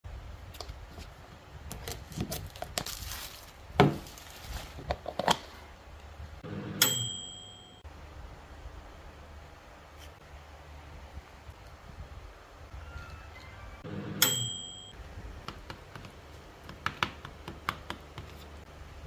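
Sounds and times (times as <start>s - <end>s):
packaging crinkling and tearing: 1.7s - 5.3s
sharp ringing clink: 6.8s - 7.8s, 14.2s - 15.0s.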